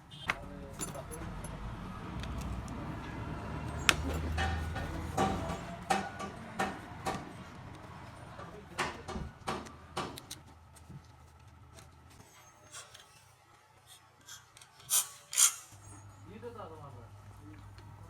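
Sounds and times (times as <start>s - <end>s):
metal tools knocking and clicking: 0.8s - 1.6s, 3.7s - 7.2s.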